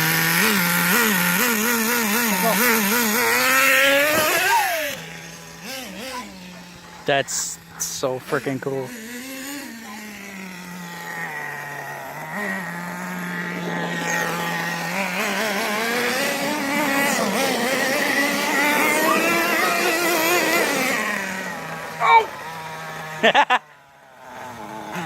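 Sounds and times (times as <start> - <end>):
small rc car engine running: 0.0 - 25.0.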